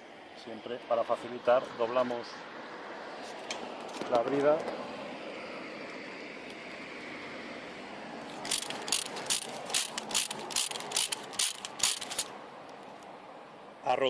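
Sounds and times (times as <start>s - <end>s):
cable tie ratcheting tight: 8.3s - 12.3s.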